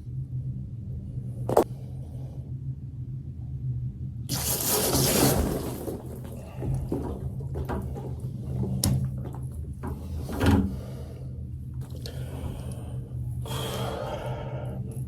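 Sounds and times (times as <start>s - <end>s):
steady low hum: 0.0s - 15.0s
hissing rush of water: 4.3s - 7.2s.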